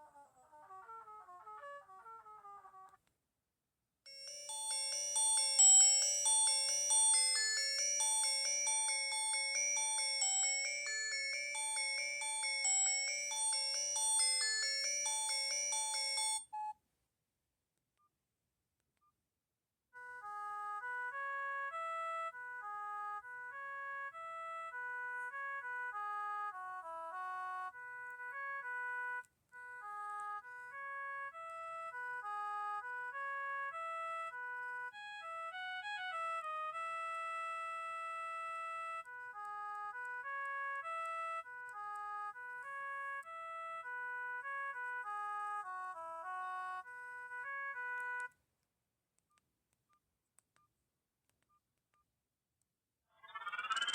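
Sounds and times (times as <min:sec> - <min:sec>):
dense chiming phone ringtone: 0:04.1 - 0:16.4
electronic ringtone melody: 0:04.1 - 0:16.6, 0:53.2 - 0:53.9.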